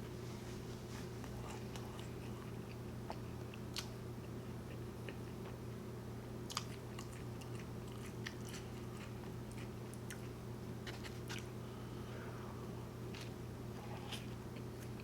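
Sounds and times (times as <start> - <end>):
steady low hum: 0.0 - 15.0
chewing: 1.2 - 4.0, 6.5 - 11.5.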